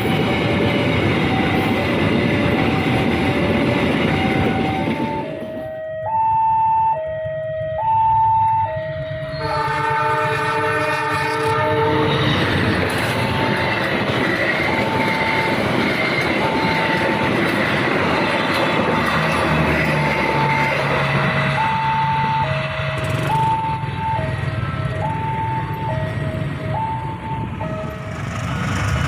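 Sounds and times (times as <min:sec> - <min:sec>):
level crossing alarm: 0:00.0 - 0:09.8, 0:14.6 - 0:17.6, 0:20.0 - 0:28.2
train rumble and wheel clatter: 0:00.0 - 0:29.0
train horn: 0:09.2 - 0:12.6.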